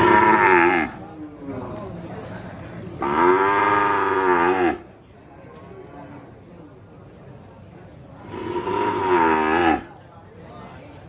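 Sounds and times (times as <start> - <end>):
cow mooing: 0.0 - 1.0, 3.0 - 4.8, 8.3 - 9.9.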